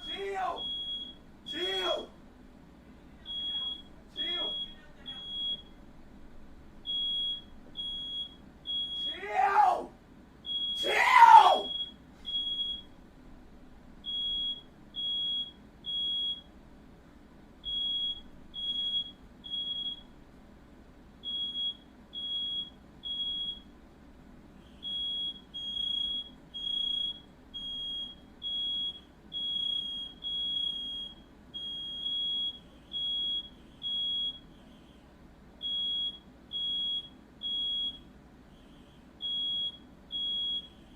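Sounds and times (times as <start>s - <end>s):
smoke alarm beeping: 0.0s - 2.1s, 3.3s - 5.8s, 6.8s - 9.2s, 10.4s - 10.9s, 11.6s - 13.0s, 14.0s - 16.6s, 17.6s - 20.1s, 21.2s - 23.7s, 24.7s - 34.8s, 35.6s - 40.9s
person crying out: 9.1s - 9.9s, 10.8s - 11.7s.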